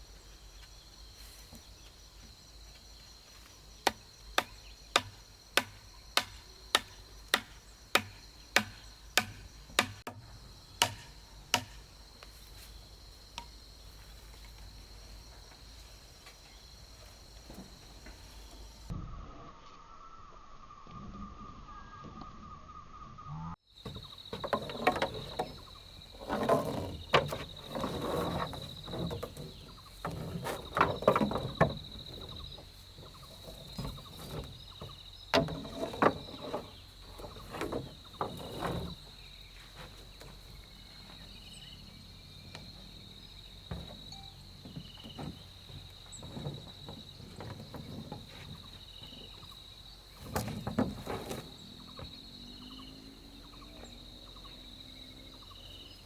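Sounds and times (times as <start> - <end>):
wood knocking and clattering: 3.8 - 11.9, 23.8 - 41.4, 42.4 - 52.1
high insect drone: 23.7 - 56.0.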